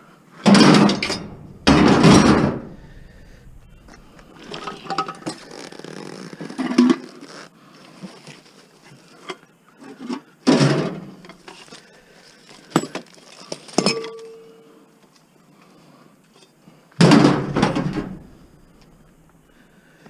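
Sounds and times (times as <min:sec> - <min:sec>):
scrap metal clanking and scraping: 0:00.5 - 0:05.5.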